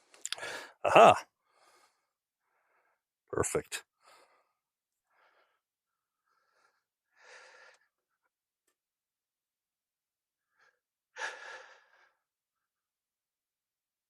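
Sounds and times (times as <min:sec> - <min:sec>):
faint breaths: 0:01.4 - 0:03.0, 0:04.0 - 0:07.9.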